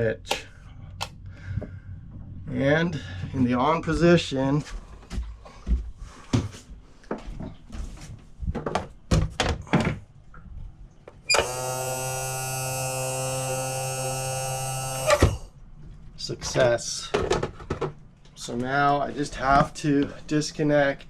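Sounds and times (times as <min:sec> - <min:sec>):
electric pump motor humming: 0:11.3 - 0:15.5.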